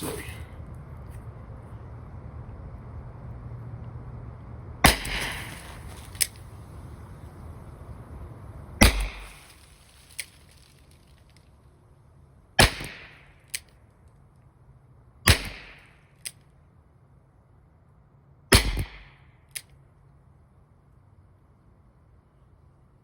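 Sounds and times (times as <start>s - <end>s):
revolver gunshots: 4.8s - 6.4s, 8.8s - 9.9s, 12.6s - 13.7s, 15.3s - 16.0s, 18.5s - 19.3s.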